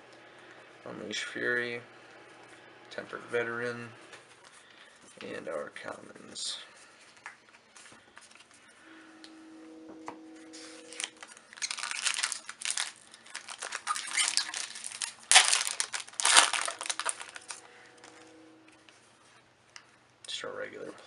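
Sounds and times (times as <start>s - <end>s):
foil wrapper crinkling and tearing: 10.9s - 17.6s.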